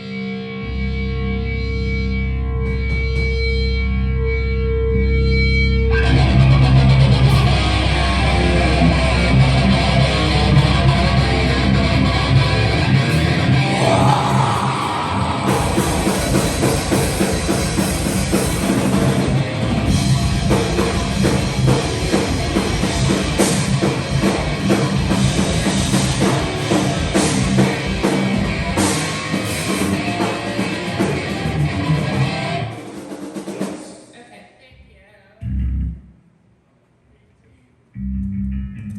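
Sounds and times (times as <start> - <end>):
bass guitar: 0.0 - 32.9, 35.4 - 36.2, 37.9 - 38.9
distorted guitars: 0.0 - 34.2, 35.4 - 36.2
drum kit: 12.8 - 34.1.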